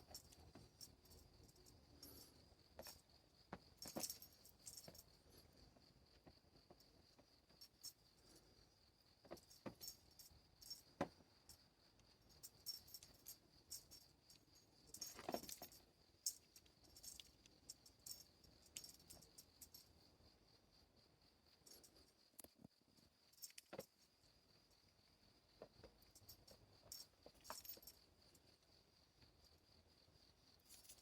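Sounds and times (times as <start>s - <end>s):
insects chirring: 0.0s - 31.0s.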